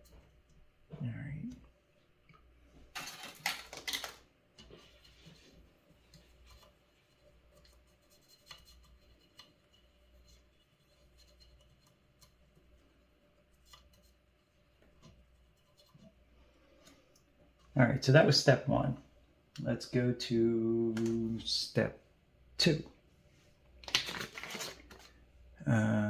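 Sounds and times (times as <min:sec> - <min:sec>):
scrubbing on circuit board: 0:04.6 - 0:16.9.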